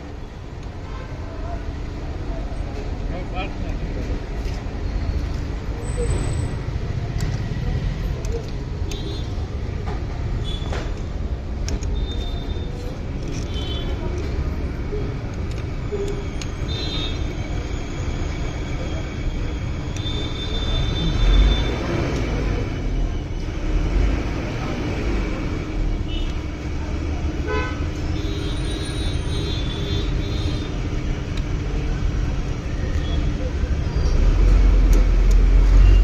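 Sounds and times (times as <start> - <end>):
road traffic rumble: 0.0 - 36.0
vehicle horns tooting: 27.4 - 30.7.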